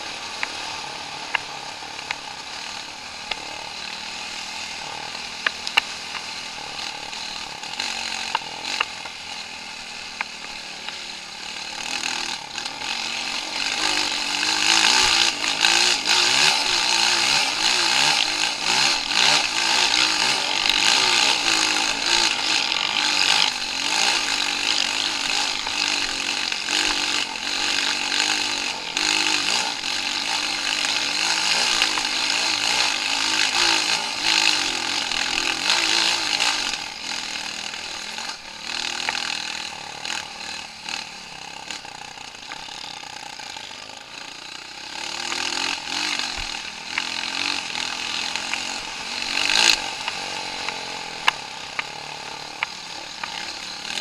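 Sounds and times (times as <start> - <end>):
off-road motorcycle engine revving: 0.0 - 54.0.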